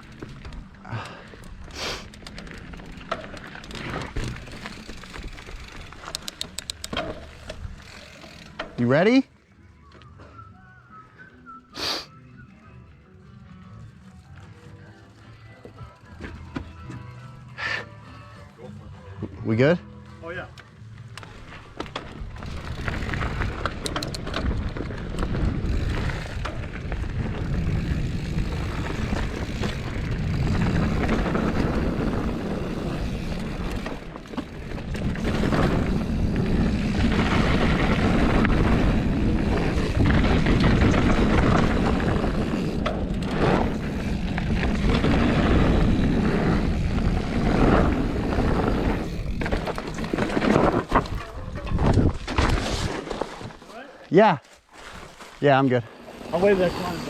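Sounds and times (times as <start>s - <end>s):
bike tyres rumbling on dirt: 0.0s - 9.2s, 20.9s - 57.0s
wind buffeting microphone: 22.2s - 50.2s.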